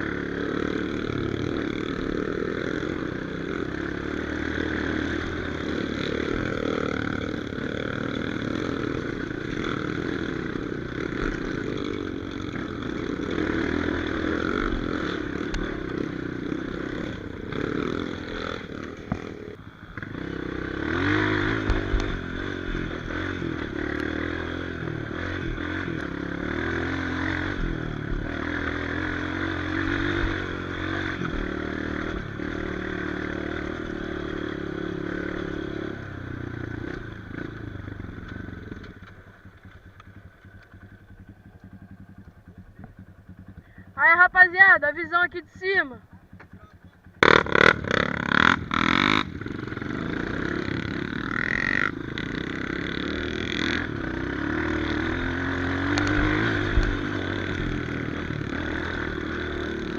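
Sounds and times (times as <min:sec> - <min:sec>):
motorcycle engine revving: 0:00.0 - 0:59.9
motorcycle knocking on rocks: 0:46.1 - 0:47.4.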